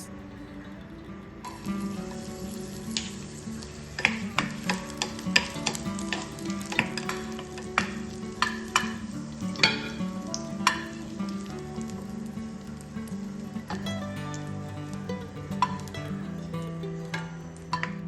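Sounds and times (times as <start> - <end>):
raisins sizzling in a pan: 1.4 - 14.6.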